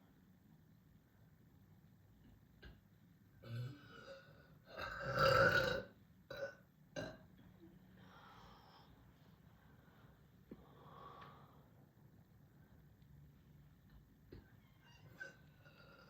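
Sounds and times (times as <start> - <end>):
person belching: 3.4 - 7.2
soft breath: 7.9 - 13.0.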